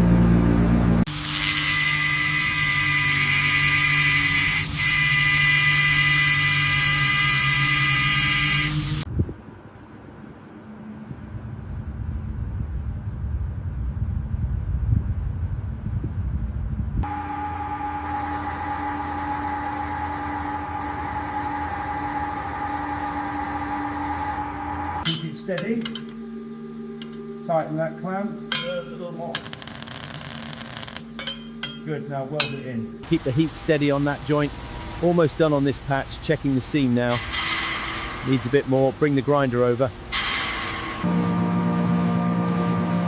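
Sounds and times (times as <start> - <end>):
machine hum: 0.0 - 43.0
power tool high-pitched whine: 1.1 - 9.1, 17.0 - 25.1.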